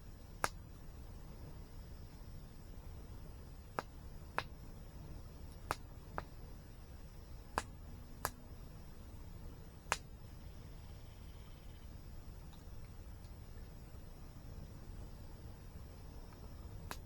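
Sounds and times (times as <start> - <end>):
campfire crackling and popping: 0.0 - 10.7, 11.9 - 17.0
low steady background rush: 0.0 - 17.0.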